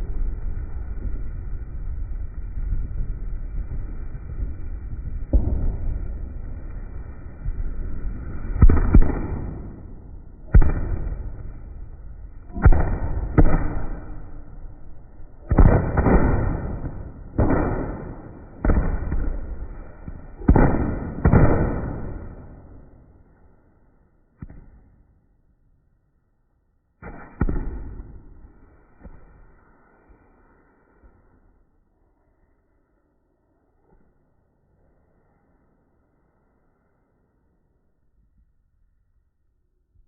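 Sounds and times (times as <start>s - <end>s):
firecrackers banging with echo: 0.0s - 23.6s, 27.0s - 29.7s.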